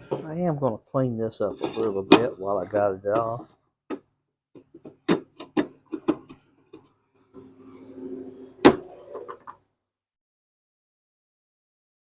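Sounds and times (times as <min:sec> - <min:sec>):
rubbing sound: 0:01.5 - 0:03.5.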